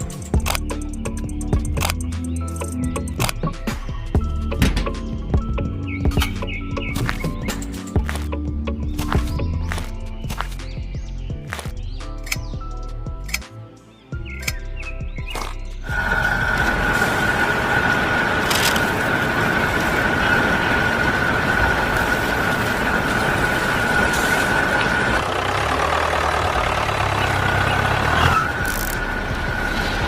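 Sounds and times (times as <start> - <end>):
lower machine hum: 15.4 - 30.0
machinery high whine: 15.8 - 30.0.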